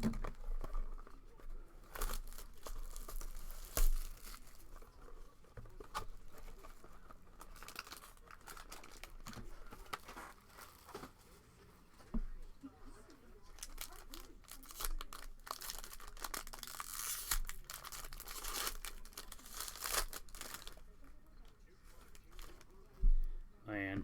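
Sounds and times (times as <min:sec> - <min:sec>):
foil wrappers tearing and crinkling: 0:00.0 - 0:11.2, 0:13.5 - 0:21.1, 0:21.9 - 0:22.8.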